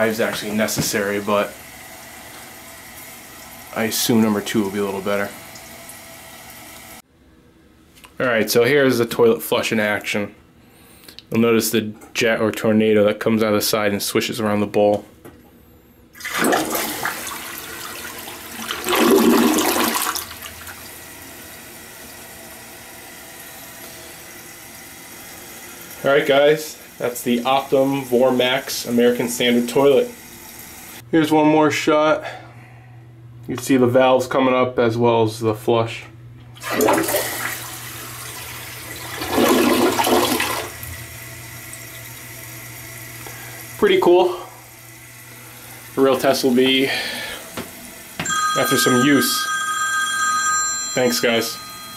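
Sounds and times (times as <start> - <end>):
toilet flushing: 0.0 - 7.0, 16.2 - 31.0, 36.6 - 50.2
water running: 0.0 - 7.0, 16.2 - 31.0, 36.5 - 51.9.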